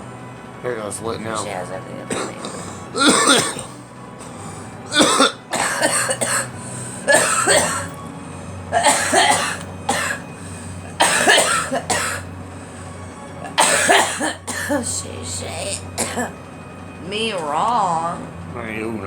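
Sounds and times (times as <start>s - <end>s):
girl coughing: 2.1s - 8.0s, 8.8s - 10.3s, 10.9s - 12.3s, 13.4s - 15.0s, 15.9s - 16.4s.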